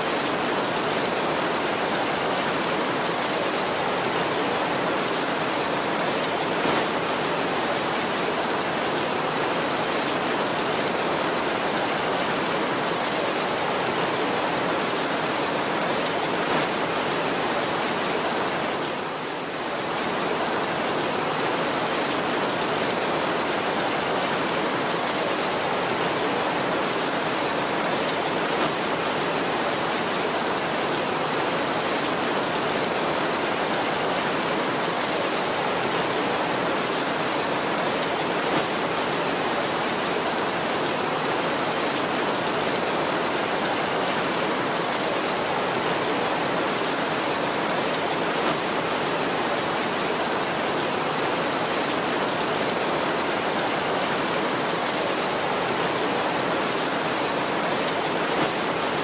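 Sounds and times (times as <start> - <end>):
heavy rain: 0.0 - 59.0.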